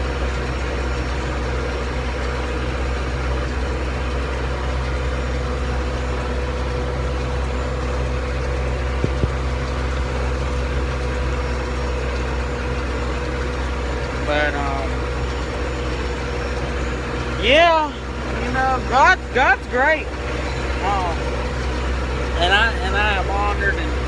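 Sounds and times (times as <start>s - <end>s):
faint steady whine: 0.0s - 24.0s
tractor engine droning: 0.0s - 24.0s
brief knock: 9.0s - 9.4s.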